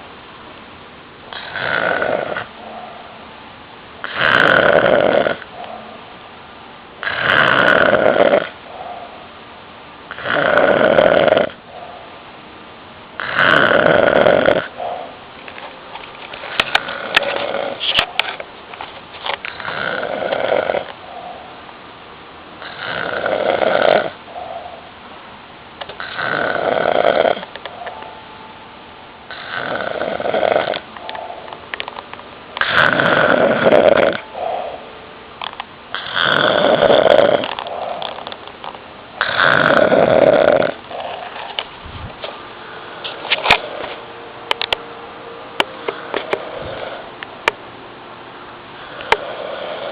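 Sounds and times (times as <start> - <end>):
man snoring loudly: 1.3 - 2.5, 4.0 - 5.4, 7.0 - 8.6, 10.1 - 11.6, 13.2 - 14.7, 19.5 - 20.9, 22.6 - 24.2, 26.0 - 27.5, 29.3 - 30.8, 32.6 - 34.8, 35.9 - 38.0, 39.2 - 40.8, 46.5 - 47.1, 48.8 - 49.9
quiet breaths: 48.6 - 49.9.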